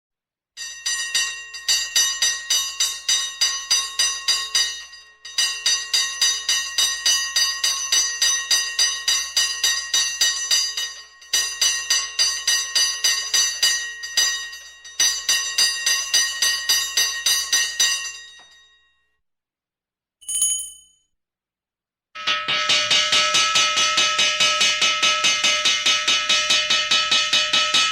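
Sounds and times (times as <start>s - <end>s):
hand fire bell ringing rapidly: 20.2s - 20.9s
louder bell ringing: 20.2s - 21.0s.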